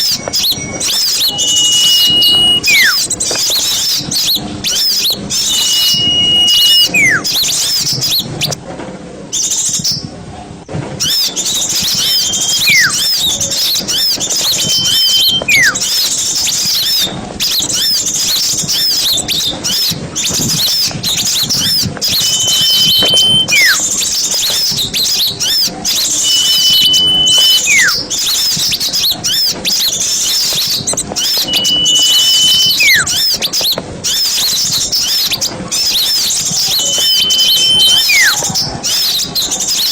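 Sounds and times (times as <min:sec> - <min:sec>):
bird whistle sweeping down: 0:00.0 - 0:03.6, 0:04.7 - 0:08.2, 0:11.2 - 0:16.0, 0:21.3 - 0:28.7, 0:30.4 - 0:33.7, 0:34.3 - 0:39.8
songbirds twittering: 0:00.0 - 0:08.6, 0:11.0 - 0:39.9.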